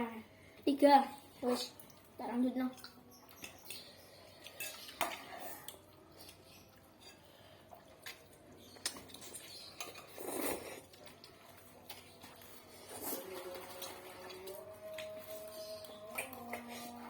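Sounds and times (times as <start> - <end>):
utensils clinking against bowl: 4.5 - 5.7.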